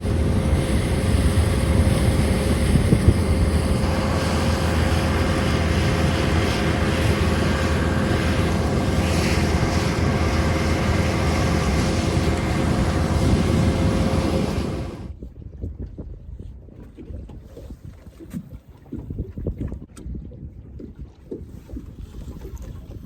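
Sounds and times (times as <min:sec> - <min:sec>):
boat motor droning: 0:00.0 - 0:15.1.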